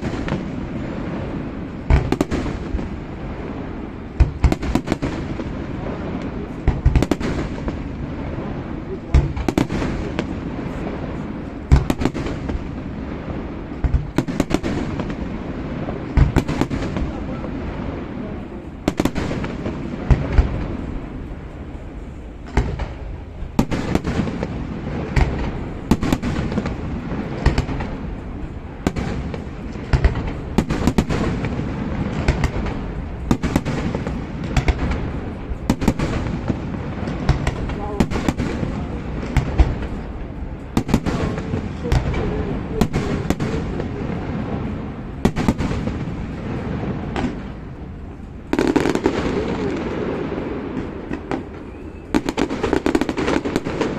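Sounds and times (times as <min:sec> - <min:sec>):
fireworks bangs and crackles: 0:00.0 - 0:53.9
onlookers murmuring: 0:05.3 - 0:11.8, 0:15.8 - 0:22.0, 0:37.6 - 0:45.2, 0:48.6 - 0:52.2.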